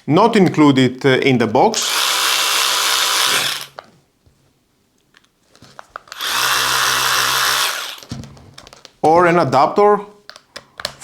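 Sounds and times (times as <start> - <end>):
cordless ratchet motor whirring: 1.8 - 3.7, 6.1 - 8.1.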